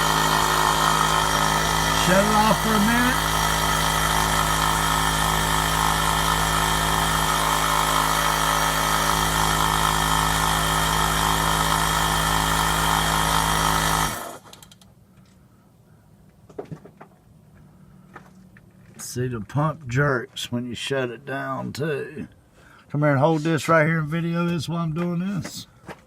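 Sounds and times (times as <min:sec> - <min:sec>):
electric air compressor running: 0:00.0 - 0:14.8.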